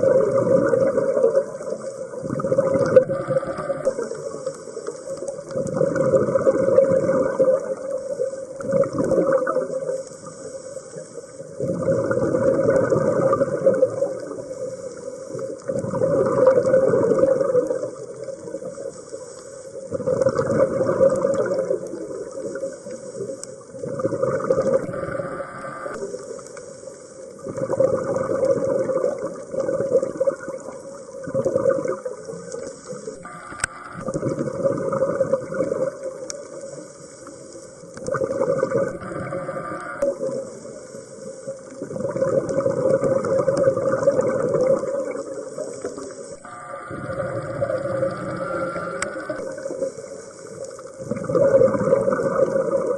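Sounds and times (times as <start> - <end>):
exhaled bubbles gurgling: 0.0 - 52.9
regulator inhalations: 3.1 - 5.4, 9.8 - 11.6, 22.3 - 23.7, 36.4 - 37.9, 38.8 - 41.8, 45.0 - 51.0.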